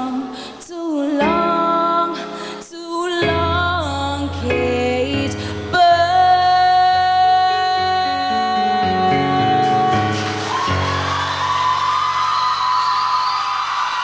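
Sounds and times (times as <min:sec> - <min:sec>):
piano accompaniment: 0:01.1 - 0:12.1
audience cheering and applause: 0:09.9 - 0:14.0.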